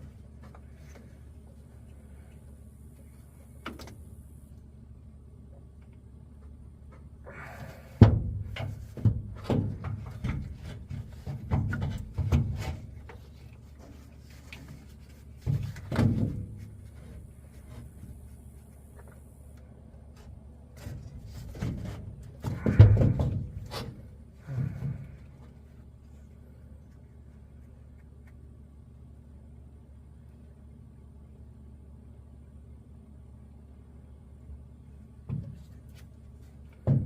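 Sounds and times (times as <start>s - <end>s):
tools knocking and clunking: 20.8s - 24.0s
loud thumps: 21.6s - 23.9s.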